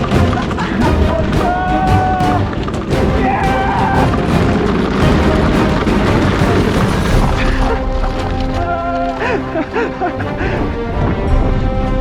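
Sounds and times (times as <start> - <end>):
percussive strikes: 0.0 - 9.4.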